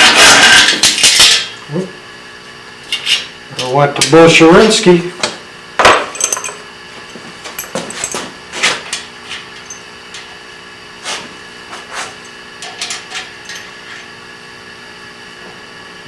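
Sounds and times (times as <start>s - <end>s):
metal parts clinking on metal: 6.2s - 6.6s, 12.0s - 14.1s.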